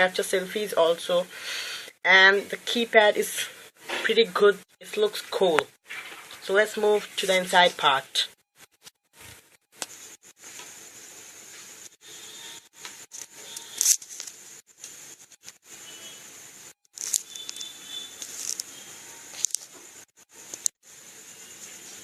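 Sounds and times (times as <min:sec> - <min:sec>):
packaging rustling and scraping: 0:05.8 - 0:06.4, 0:12.8 - 0:15.6, 0:16.9 - 0:19.9
steady hiss: 0:09.2 - 0:22.0.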